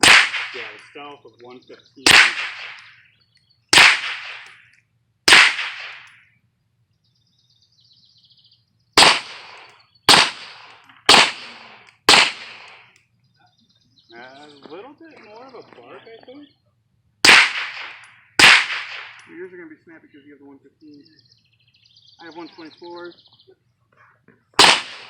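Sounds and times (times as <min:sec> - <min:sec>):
suppressed pistol shots: 0:00.0 - 0:00.8, 0:02.0 - 0:03.0, 0:03.7 - 0:04.7, 0:05.3 - 0:06.2, 0:09.0 - 0:13.0, 0:17.2 - 0:19.3, 0:24.6 - 0:25.0.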